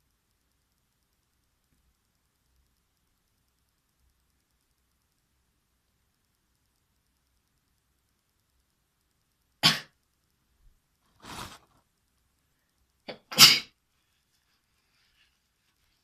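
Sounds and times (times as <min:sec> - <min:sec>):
person sneezing: 0:09.6 - 0:09.9, 0:13.3 - 0:13.7.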